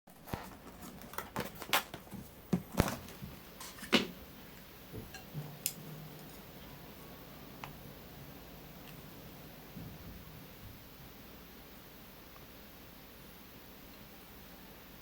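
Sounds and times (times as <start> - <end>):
clicks and knocks of objects handled: 0.2 - 4.1.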